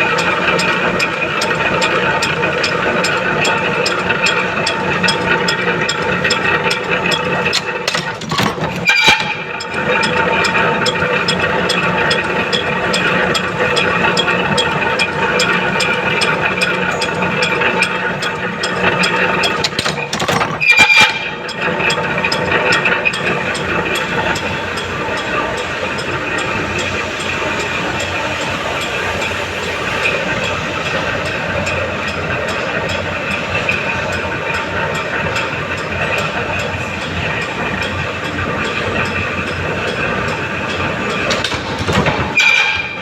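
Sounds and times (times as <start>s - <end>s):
machine tool ticking: 0.0s - 43.0s.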